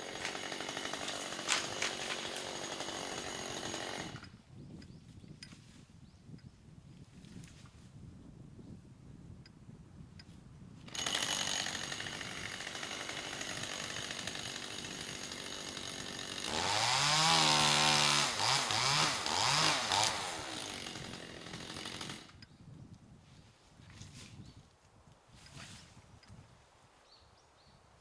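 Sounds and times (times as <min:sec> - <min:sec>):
chainsaw running and revving: 0:00.0 - 0:04.3, 0:10.9 - 0:22.4.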